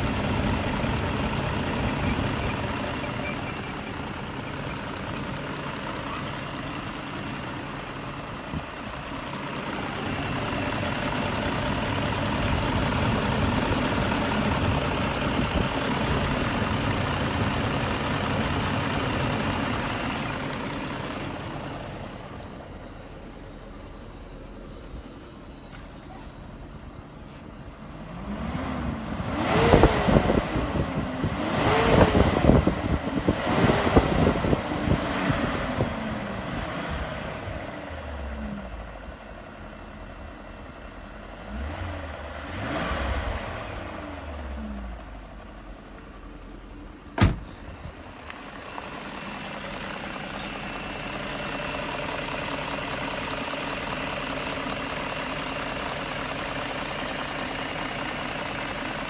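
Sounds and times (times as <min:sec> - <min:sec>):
car engine revving: 0:08.7 - 0:22.6, 0:28.0 - 0:38.6, 0:41.4 - 0:45.0.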